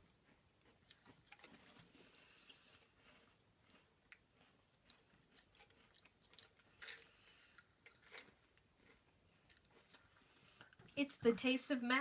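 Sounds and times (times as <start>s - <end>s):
wafers crunching: 2.9s - 10.8s.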